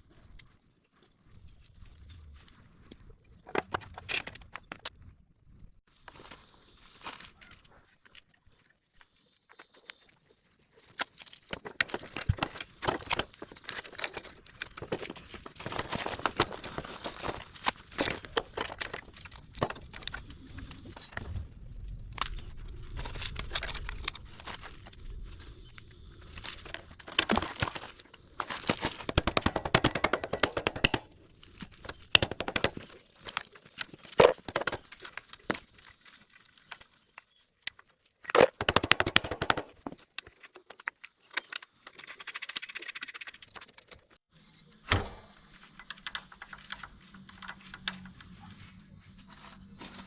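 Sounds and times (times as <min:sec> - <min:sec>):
tools and metal parts clanking: 0:10.8 - 0:21.3, 0:44.8 - 0:50.0
sharp knock: 0:44.9 - 0:45.4.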